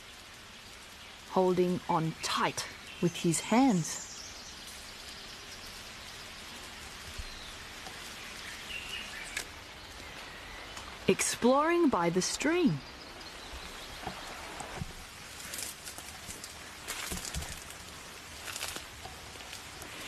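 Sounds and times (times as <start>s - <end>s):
steady hiss of rain or stream: 0.0s - 20.0s
crackles and rustles: 4.0s - 11.1s, 13.1s - 20.0s.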